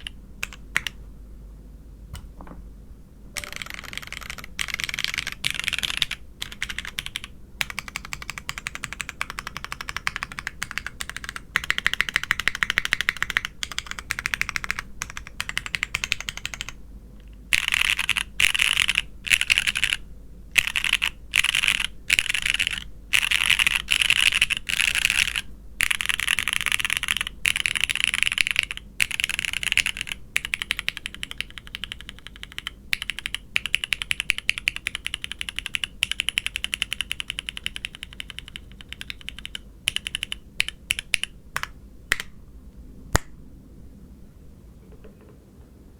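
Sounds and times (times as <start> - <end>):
mechanical keyboard clacking keystrokes: 3.4 - 16.8, 20.6 - 42.3.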